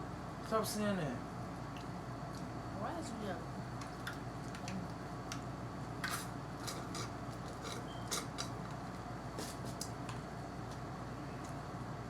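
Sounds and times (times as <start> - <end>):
food packaging crackles and clicks: 3.8 - 11.6.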